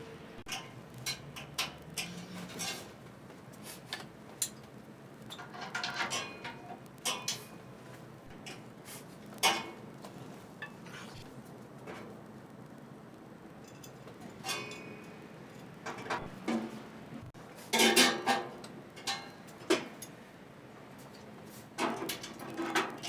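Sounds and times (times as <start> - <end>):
metal grill parts clinking: 0.0 - 3.0, 5.3 - 7.5, 13.6 - 16.8.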